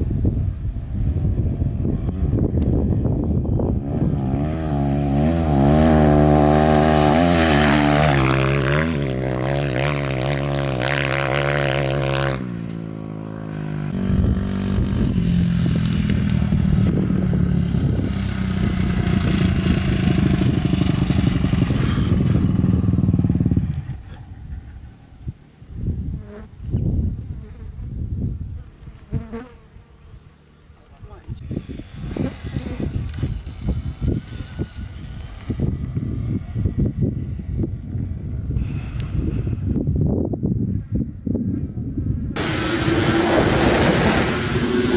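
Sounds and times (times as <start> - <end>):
dirt bike engine revving: 1.4 - 25.1, 31.4 - 37.8, 42.4 - 44.9.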